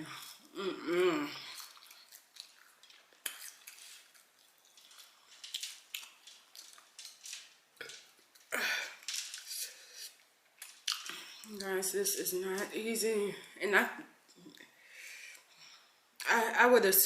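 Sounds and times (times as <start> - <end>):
wet mouth chewing sounds: 1.3 - 7.2, 9.4 - 11.6.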